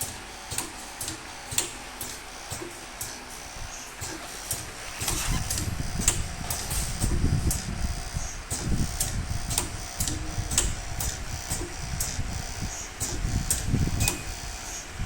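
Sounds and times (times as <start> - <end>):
machine sharp clicks: 0.1 - 3.2, 4.0 - 6.7, 8.5 - 12.2.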